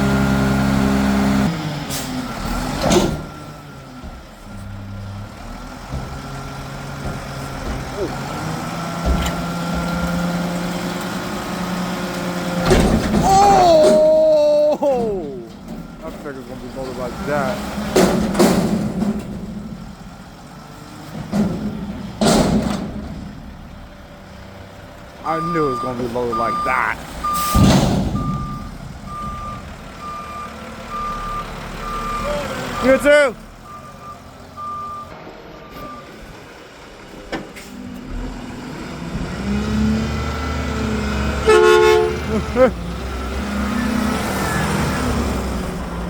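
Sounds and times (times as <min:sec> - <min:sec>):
diesel truck engine revving: 0:00.0 - 0:46.0
reverse alarm beep: 0:28.2 - 0:32.9
truck horn blast: 0:41.3 - 0:42.5.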